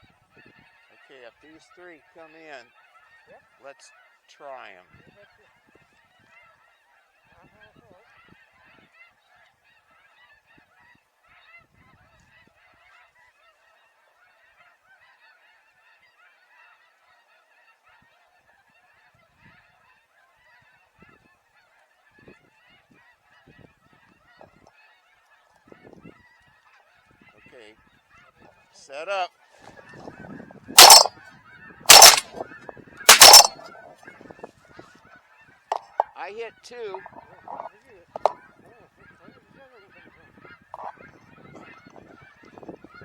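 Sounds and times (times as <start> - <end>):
snow geese calling: 36.8 - 38.4, 40.8 - 41.7.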